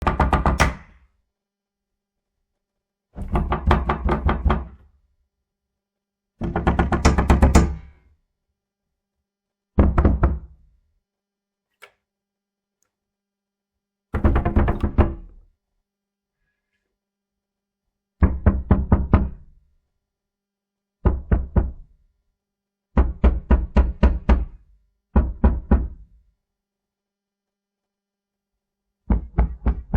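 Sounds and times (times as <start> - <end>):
rapid knocking on a door: 0.0 - 0.6, 3.2 - 4.8, 6.4 - 7.8, 14.2 - 15.2, 18.2 - 19.3, 23.0 - 24.5, 25.1 - 26.0, 29.1 - 29.9.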